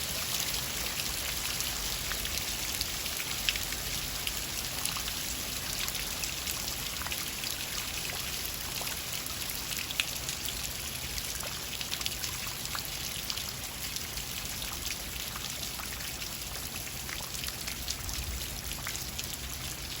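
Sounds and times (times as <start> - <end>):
rain falling steadily: 0.0 - 20.0.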